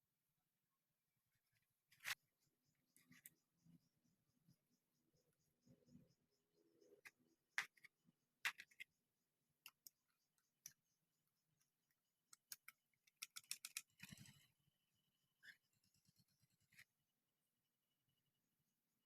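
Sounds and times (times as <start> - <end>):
clicks and taps of parts handled: 12.3 - 14.3.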